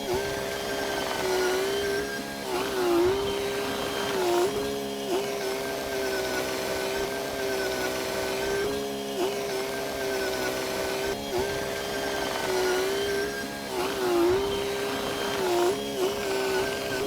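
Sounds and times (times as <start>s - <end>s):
bulldozer diesel engine whining: 0.0s - 17.0s.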